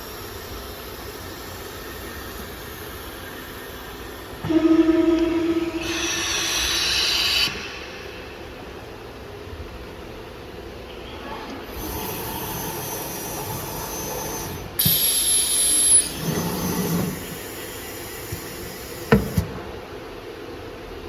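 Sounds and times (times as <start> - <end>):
machine running noise: 0.6 - 9.5, 11.3 - 19.8
hissing burst with high whistle: 2.9 - 9.0.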